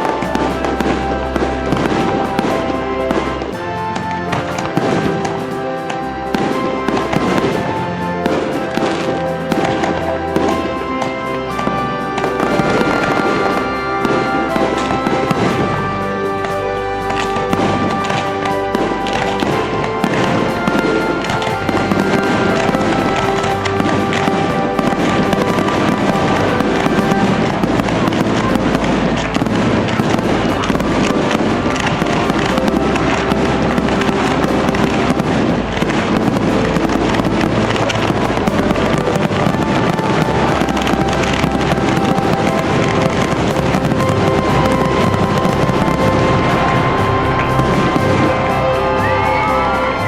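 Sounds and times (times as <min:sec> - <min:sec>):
fireworks crackling: 0:00.0 - 0:50.0
music playing: 0:00.0 - 0:50.0.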